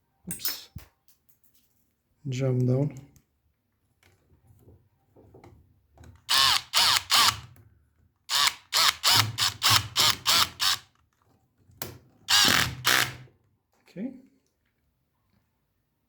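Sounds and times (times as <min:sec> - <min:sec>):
electric screwdriver driving screws: 0:06.3 - 0:07.5, 0:08.3 - 0:10.9, 0:12.3 - 0:13.2.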